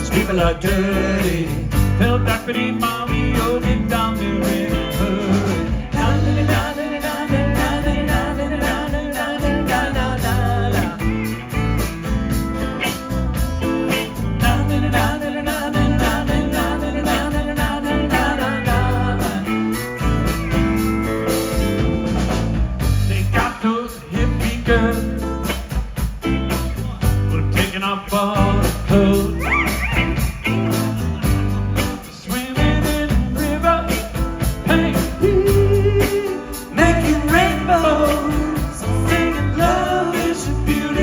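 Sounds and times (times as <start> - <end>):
person singing: 0.0 - 11.5, 14.1 - 20.0, 26.8 - 41.0
country band playing: 0.0 - 41.0.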